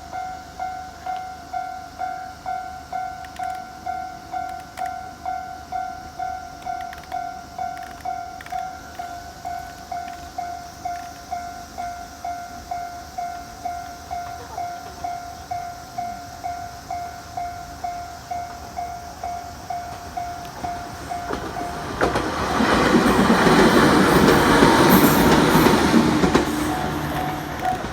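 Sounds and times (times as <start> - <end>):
level-crossing warning bell: 0.0 - 27.9
train rushing past: 11.6 - 27.9.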